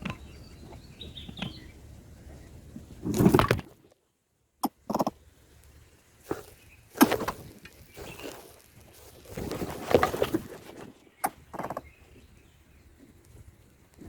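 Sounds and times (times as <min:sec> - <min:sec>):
faint high bird chirp: 0:00.0 - 0:02.6, 0:07.7 - 0:09.1
leaves and nest rustling: 0:05.5 - 0:14.0.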